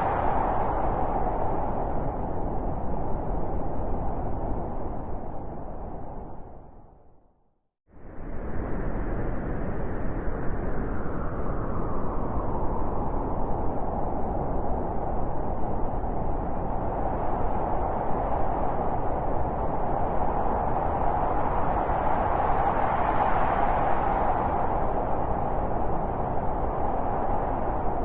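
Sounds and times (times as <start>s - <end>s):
howling blizzard wind: 0.0s - 7.2s, 7.9s - 28.0s.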